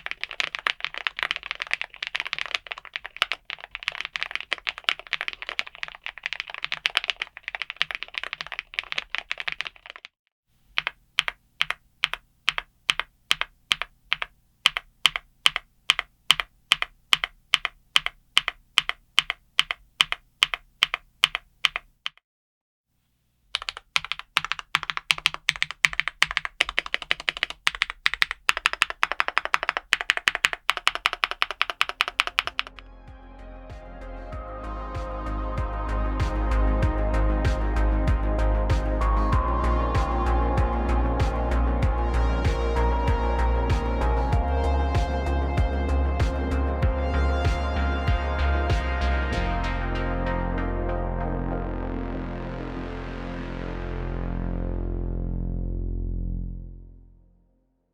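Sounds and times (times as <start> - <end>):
mechanical keyboard typing: 0.0 - 10.1, 10.7 - 22.2, 23.5 - 32.8.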